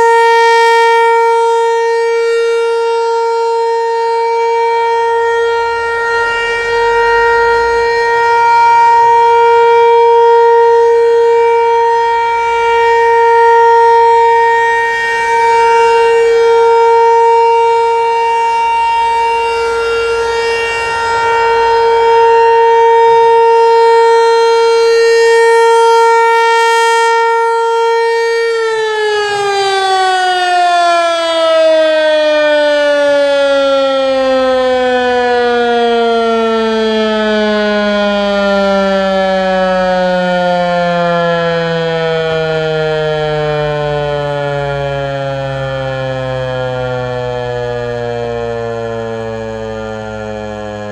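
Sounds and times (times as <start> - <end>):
rotating warning siren: 0.0 - 50.9.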